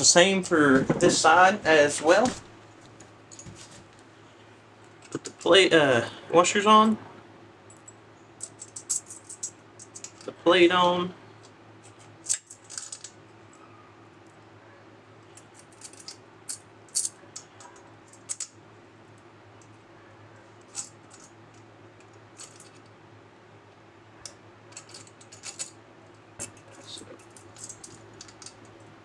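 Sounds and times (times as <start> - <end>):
steady low hum: 0.0 - 29.0
small metal hardware clicking: 7.7 - 10.3, 11.4 - 13.2, 15.2 - 18.6, 24.2 - 25.8, 26.4 - 28.8.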